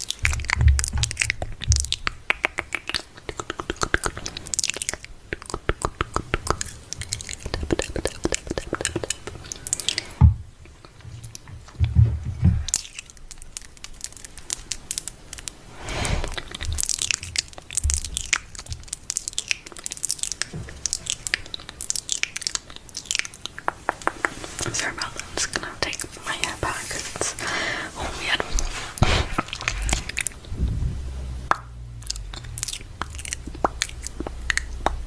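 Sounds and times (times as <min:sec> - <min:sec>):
close-up clicks and crackles: 0:00.0 - 0:11.5, 0:12.7 - 0:15.6, 0:16.2 - 0:27.4, 0:31.5 - 0:35.0
dull thumps: 0:11.5 - 0:12.8.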